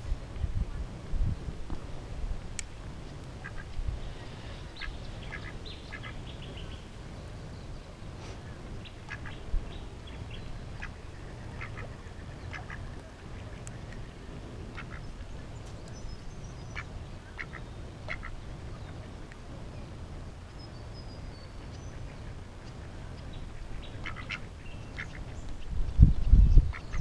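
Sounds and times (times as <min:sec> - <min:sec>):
ducks quacking: 0:03.4 - 0:06.5, 0:08.8 - 0:09.5, 0:10.1 - 0:15.2, 0:16.7 - 0:19.4, 0:21.6 - 0:25.4.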